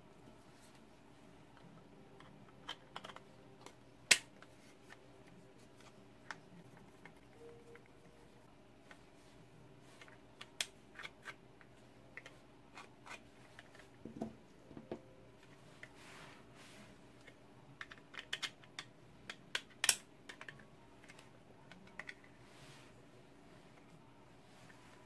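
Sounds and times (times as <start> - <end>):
plastic parts clicking: 17.8 - 22.3.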